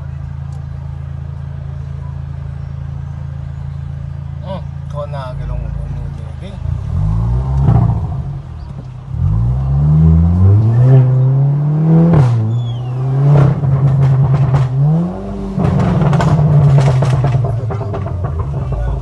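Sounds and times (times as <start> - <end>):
car engine accelerating hard: 0.0 - 19.0
exhaust cracks: 4.8 - 19.0.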